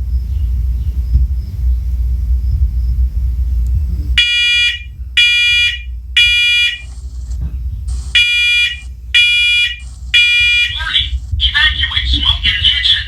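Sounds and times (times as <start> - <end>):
low rumble: 0.0 - 13.0
smoke alarm beeps: 4.2 - 7.1, 7.9 - 11.2.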